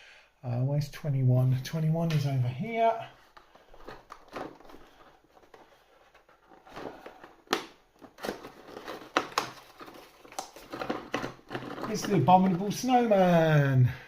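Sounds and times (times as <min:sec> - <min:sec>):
faint packaging crinkling: 0:03.0 - 0:12.9.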